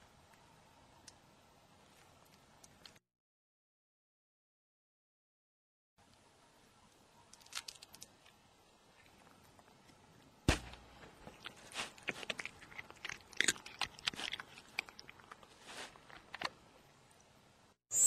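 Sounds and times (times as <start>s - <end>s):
cat crunching dry treats: 7.3s - 10.2s, 11.2s - 16.6s.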